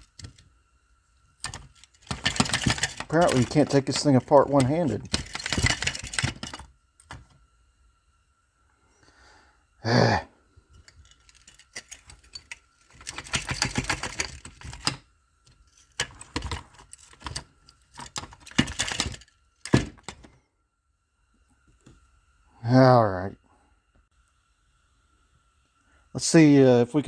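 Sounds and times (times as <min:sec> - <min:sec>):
metal parts clicking and rattling: 0:00.0 - 0:00.5, 0:01.4 - 0:07.4, 0:10.7 - 0:20.3.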